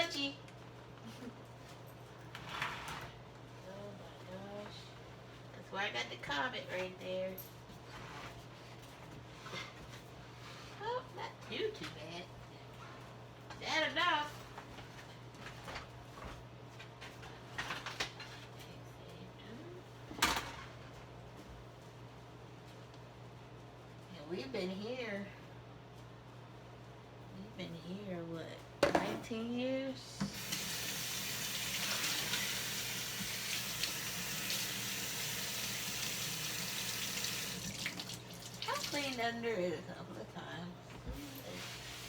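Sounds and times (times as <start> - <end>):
kitchen things knocking on counter: 28.8 - 29.2.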